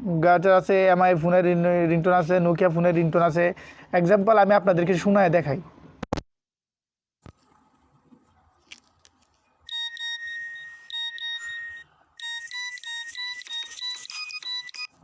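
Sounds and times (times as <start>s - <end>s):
electronic phone ringtone: 9.7s - 15.0s.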